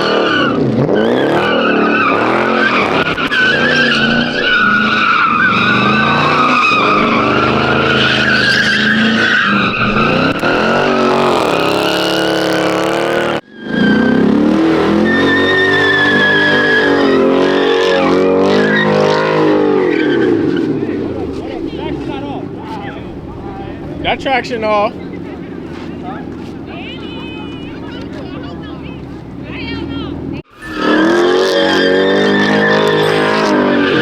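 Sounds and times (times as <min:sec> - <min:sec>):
tyre squeal: 0:00.0 - 0:12.6, 0:13.4 - 0:34.0
car engine revving: 0:00.0 - 0:34.0.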